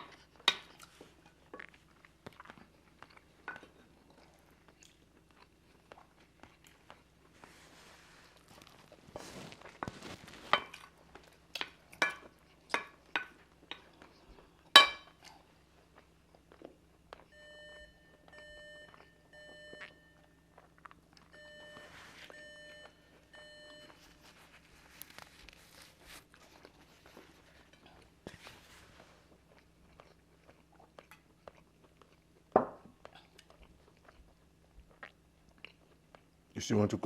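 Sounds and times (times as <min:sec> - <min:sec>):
cutlery clinking on plates: 0:00.0 - 0:00.8, 0:10.4 - 0:10.8, 0:12.0 - 0:13.9, 0:14.8 - 0:15.2.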